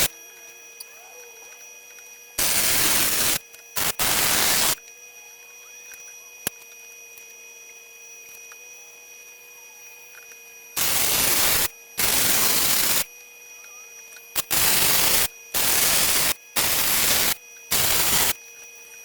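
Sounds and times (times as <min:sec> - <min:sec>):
welder arc crackling: 0:02.4 - 0:04.8, 0:10.8 - 0:13.1, 0:14.4 - 0:18.4.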